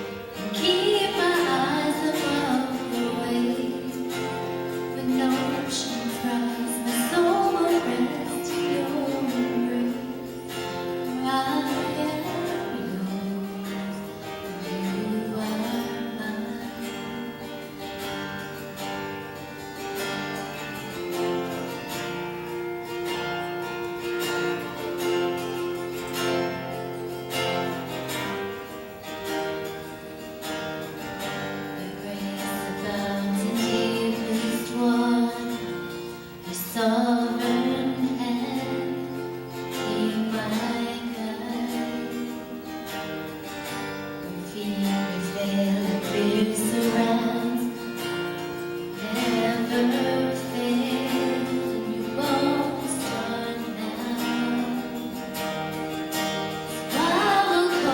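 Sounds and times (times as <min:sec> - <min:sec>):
acoustic guitar strumming: 0:00.0 - 0:57.9
man and woman singing: 0:00.5 - 0:17.7, 0:31.7 - 0:42.7, 0:44.3 - 0:48.2, 0:48.8 - 0:55.4, 0:56.6 - 0:57.9.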